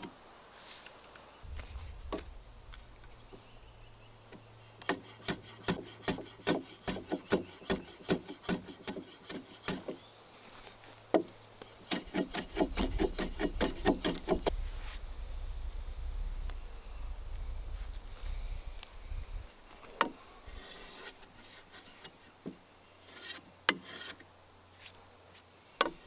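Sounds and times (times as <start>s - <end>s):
hand tool rubbing into timber: 4.8s - 10.0s, 11.8s - 14.5s, 20.0s - 22.2s.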